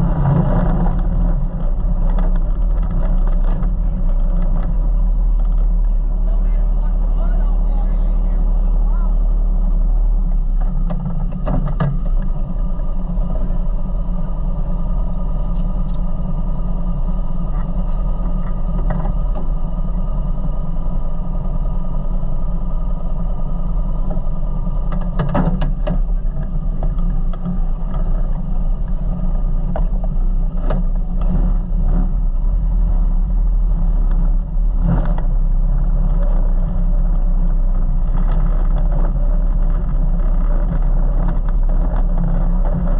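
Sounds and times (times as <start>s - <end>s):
vehicle engine running: 0.0s - 42.9s
knocks and rattles: 24.9s - 28.4s.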